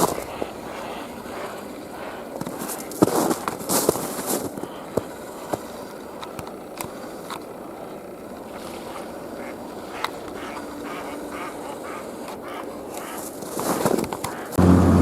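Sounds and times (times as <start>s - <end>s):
flock of birds calling: 0.0s - 3.4s, 8.4s - 15.0s.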